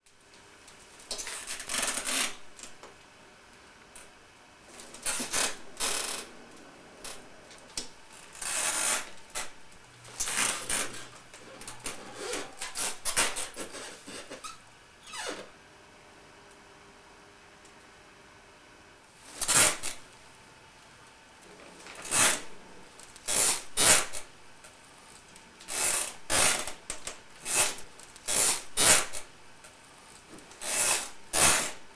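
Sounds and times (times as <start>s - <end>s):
doll stroller creaking: 4.7s - 15.3s.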